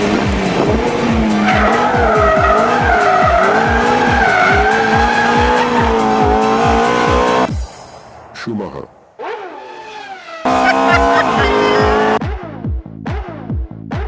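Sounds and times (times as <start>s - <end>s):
car engine running: 0.0s - 7.5s, 10.5s - 12.2s
tyres squealing: 0.0s - 7.5s, 10.5s - 12.2s
music with thumping beat: 0.0s - 7.7s, 12.2s - 14.0s.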